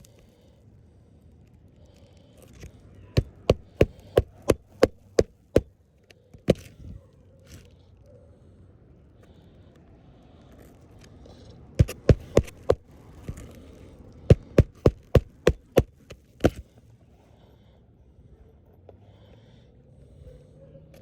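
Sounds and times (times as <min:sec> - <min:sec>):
sharp knocks: 0:14.3 - 0:16.6.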